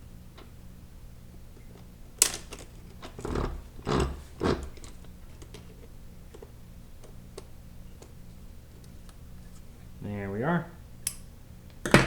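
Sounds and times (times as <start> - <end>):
rough metal scrapes: 2.4 - 5.8.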